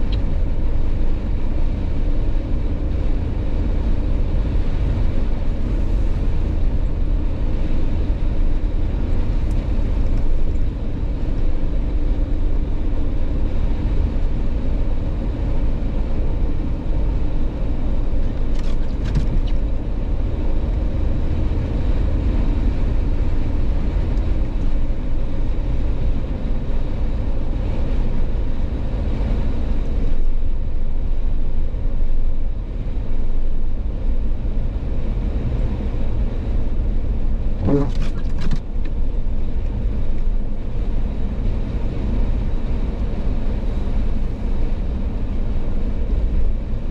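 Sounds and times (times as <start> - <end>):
vehicle driving rumble: 0.0 - 46.9.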